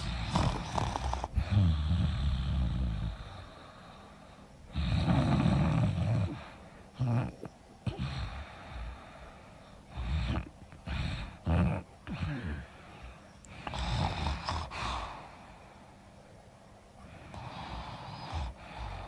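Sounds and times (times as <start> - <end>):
woman snoring: 0.0 - 3.4, 4.7 - 9.0, 9.9 - 12.8, 13.6 - 15.3, 17.3 - 19.0.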